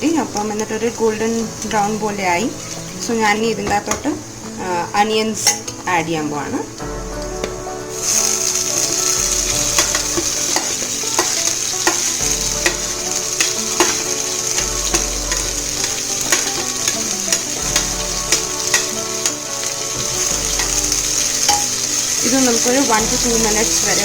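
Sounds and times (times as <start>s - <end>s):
onions sizzling in hot oil: 0.0s - 24.0s
spoon scraping a pot: 5.4s - 5.9s, 8.5s - 22.2s.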